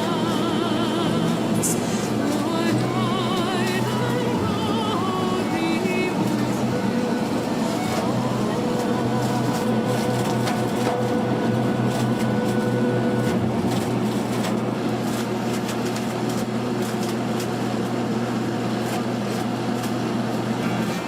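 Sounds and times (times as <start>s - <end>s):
high whine: 0.0s - 16.5s
machinery humming: 0.0s - 21.0s.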